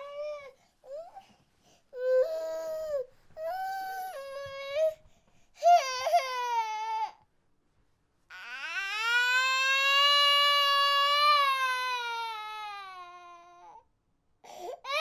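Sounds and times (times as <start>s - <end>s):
baby crying: 14.5s - 15.0s.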